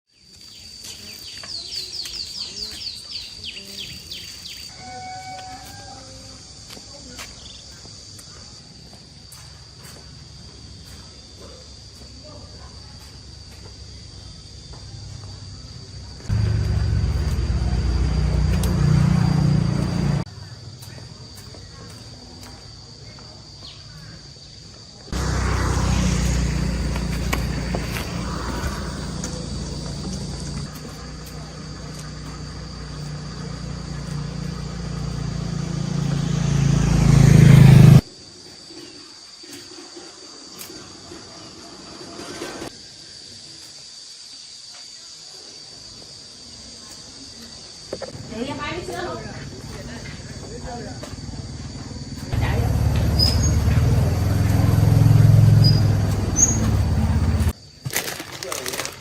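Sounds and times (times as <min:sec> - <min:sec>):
insect trill: 0:00.1 - 0:59.0
loud low rumble: 0:16.3 - 0:20.3, 0:25.2 - 0:38.0, 0:52.3 - 0:57.5.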